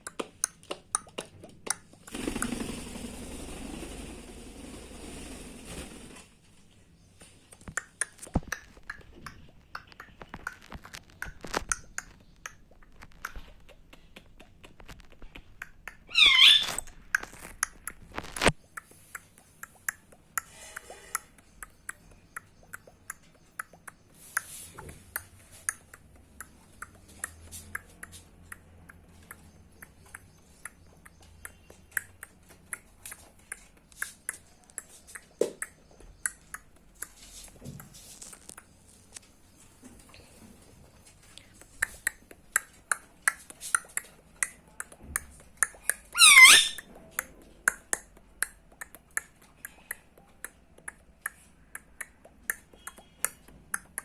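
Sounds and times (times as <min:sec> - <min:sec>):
parrot beak clicks: 0:07.5 - 0:37.6, 0:41.4 - 0:54.0
parrot squawk: 0:16.1 - 0:16.8, 0:46.1 - 0:46.9.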